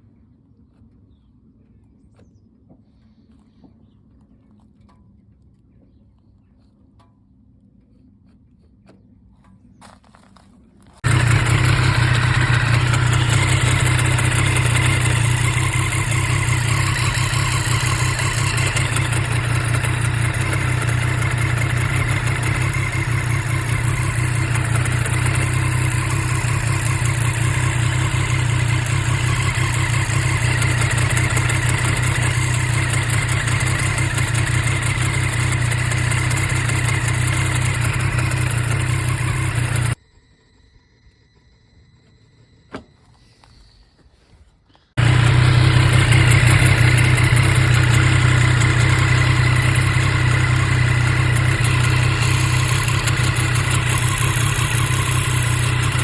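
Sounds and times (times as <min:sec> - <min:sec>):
motorcycle engine idling: 0:09.8 - 0:40.0, 0:45.0 - 0:56.0
grinding noise: 0:11.0 - 0:40.0.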